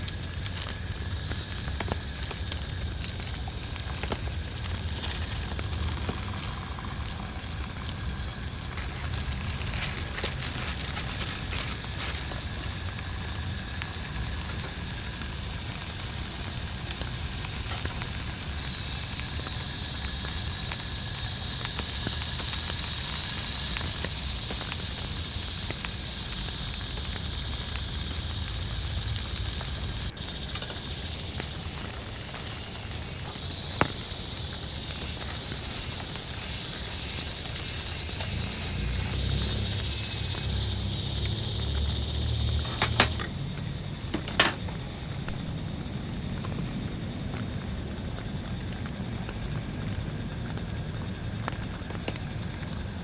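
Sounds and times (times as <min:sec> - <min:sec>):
steady rain pattering: 0:00.0 - 0:53.0.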